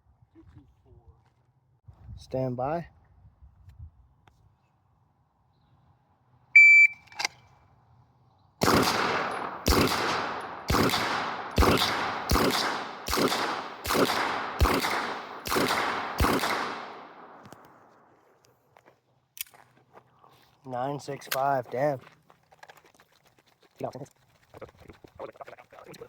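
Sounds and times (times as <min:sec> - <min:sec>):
shot timer beep: 0:06.6 - 0:07.1
gunshots: 0:08.6 - 0:18.0.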